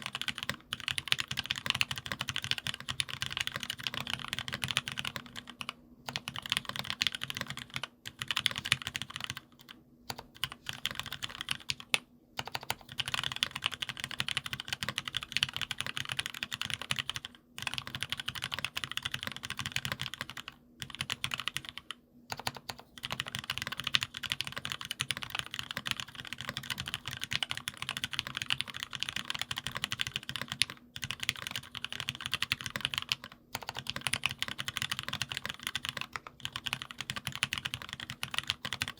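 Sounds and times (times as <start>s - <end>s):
fast typing on a keyboard: 0.0s - 38.9s.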